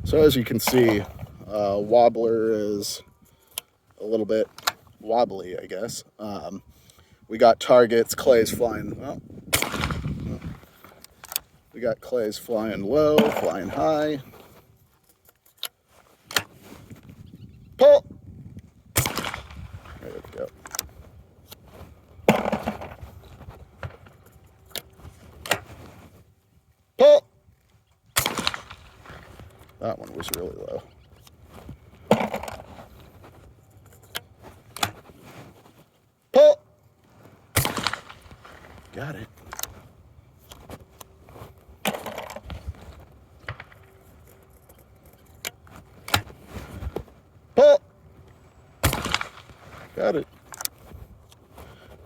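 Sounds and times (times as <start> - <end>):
person shouting: 27.0 - 27.2, 36.3 - 36.6, 47.6 - 47.8.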